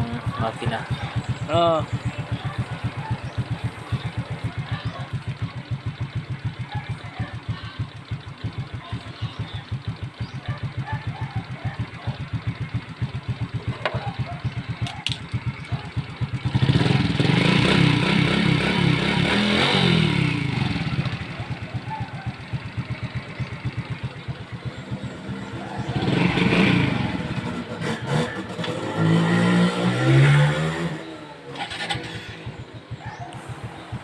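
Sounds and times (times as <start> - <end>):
motorcycle engine idling: 0.0 - 29.3, 30.1 - 34.0.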